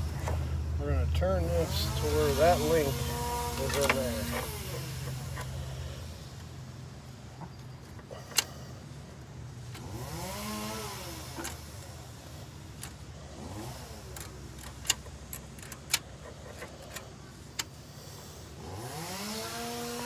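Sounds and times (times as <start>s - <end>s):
motor rising and falling in pitch: 1.4s - 5.6s, 18.6s - 20.0s
wrench clicking and tapping on metal: 14.2s - 17.8s.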